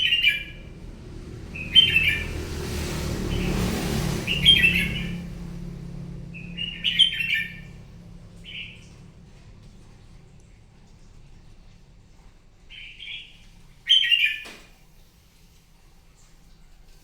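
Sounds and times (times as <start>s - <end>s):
bird singing warbled phrases: 0.0s - 0.8s, 1.5s - 2.4s, 4.2s - 5.3s, 6.3s - 9.1s, 12.7s - 14.6s
low hum: 0.0s - 12.8s.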